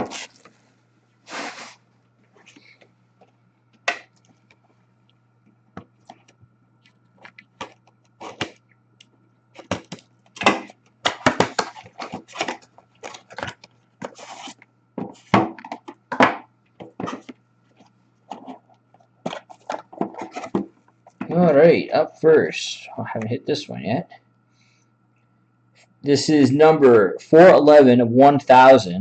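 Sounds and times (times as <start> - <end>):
packaging crinkling and tearing: 11.5 - 14.6.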